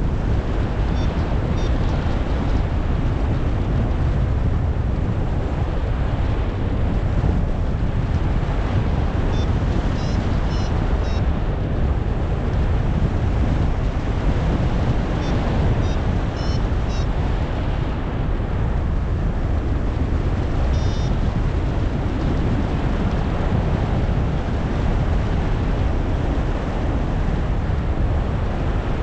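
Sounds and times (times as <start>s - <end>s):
wind buffeting microphone: 0.0s - 29.0s
short high electronic beeps: 10.0s - 11.2s, 16.4s - 17.0s.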